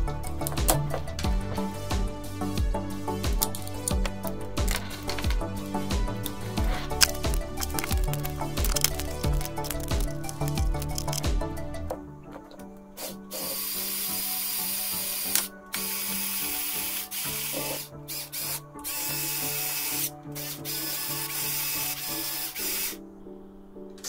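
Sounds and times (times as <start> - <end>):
background music: 0.0 - 24.0
motor and plastic gears whirring: 6.6 - 11.2, 13.0 - 23.0.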